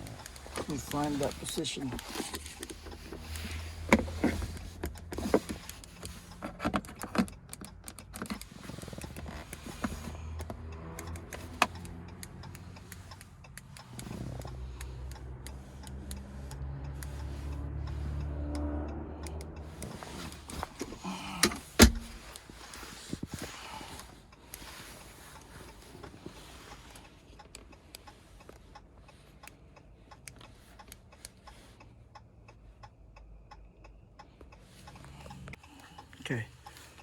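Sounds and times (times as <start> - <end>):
key fob clicking and rattling: 0.0 - 18.0.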